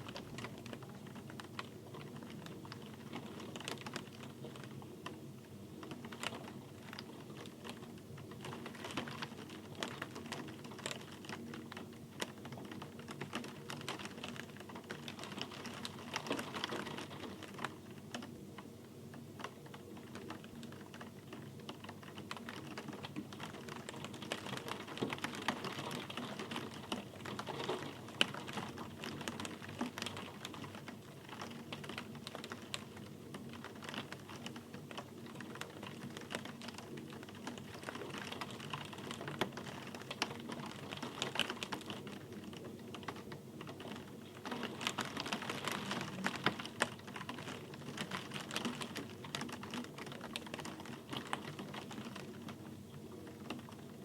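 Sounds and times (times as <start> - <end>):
rain pattering: 0.0 - 54.0.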